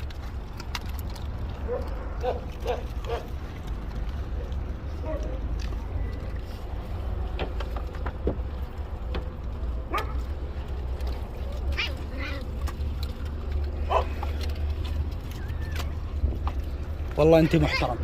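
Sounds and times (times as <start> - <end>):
dog yelping: 1.6 - 3.3, 13.8 - 14.2.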